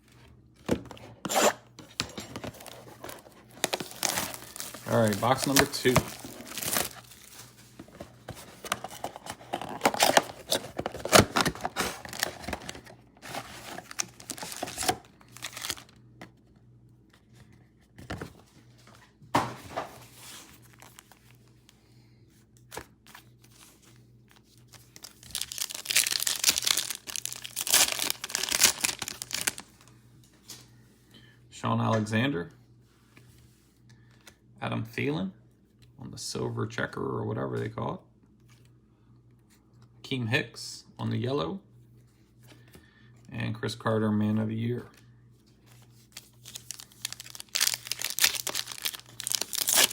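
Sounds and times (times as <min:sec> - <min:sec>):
plastic wrapping crinkling and tearing: 0:02.5 - 0:16.0, 0:20.5 - 0:21.4, 0:24.4 - 0:29.9, 0:45.8 - 0:49.9.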